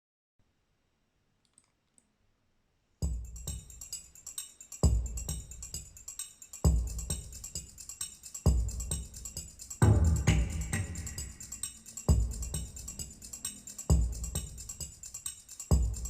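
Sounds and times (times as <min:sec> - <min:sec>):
faint clicks: 0:01.4 - 0:02.1
deep bass beat: 0:03.0 - 0:03.8, 0:06.7 - 0:07.7, 0:08.5 - 0:13.3, 0:13.9 - 0:14.9, 0:15.7 - 0:16.0
quick ticking percussion: 0:03.0 - 0:16.0
music over loudspeakers: 0:08.4 - 0:14.9.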